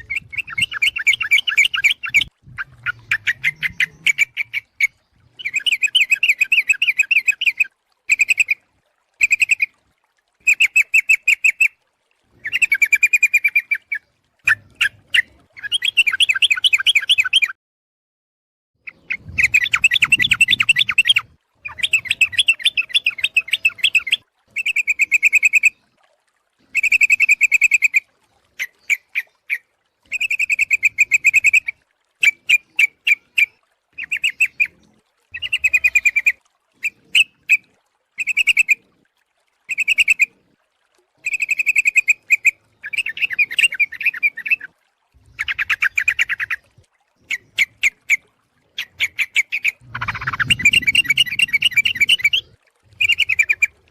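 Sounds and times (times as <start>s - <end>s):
bulbul bubbling chatter: 0.0s - 8.6s, 18.9s - 25.7s, 41.2s - 53.9s.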